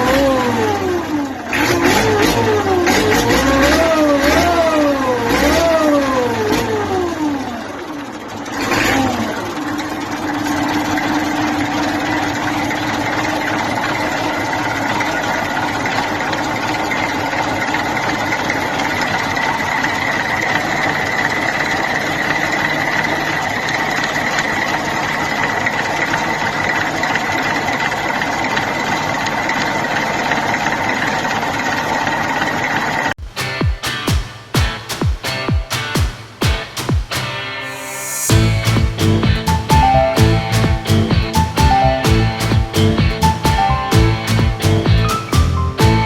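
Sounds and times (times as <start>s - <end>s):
high supercharger whine: 0.0s - 29.8s, 37.6s - 39.5s
diesel tractor engine running: 0.0s - 33.1s, 37.8s - 46.0s.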